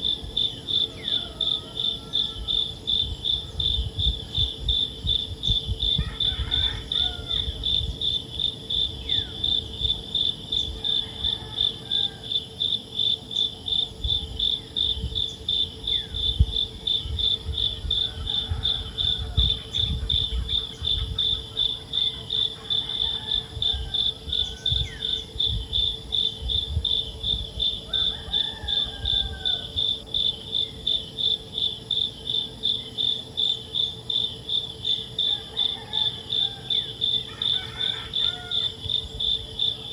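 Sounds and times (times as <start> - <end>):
cricket chirping: 0.0 - 39.9.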